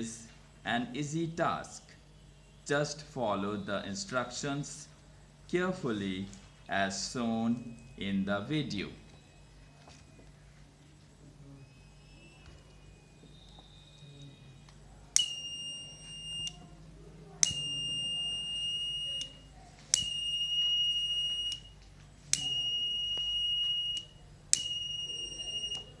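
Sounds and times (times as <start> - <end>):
high-pitched alarm beeps: 6.5 - 10.3, 11.5 - 16.6, 17.4 - 26.0.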